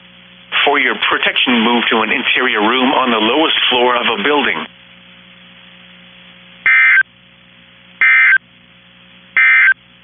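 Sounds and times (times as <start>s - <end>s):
steady low hum: 0.0s - 10.0s
two-tone data warble bursts: 6.7s - 7.0s, 8.0s - 8.4s, 9.4s - 9.8s.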